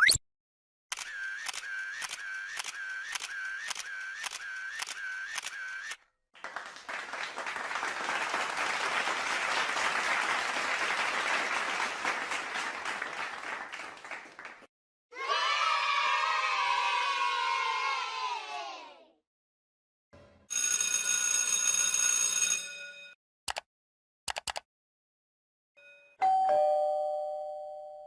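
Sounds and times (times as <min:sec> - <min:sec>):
camera shutter clicking: 0:00.9 - 0:06.0
crowd applauding: 0:06.4 - 0:14.7.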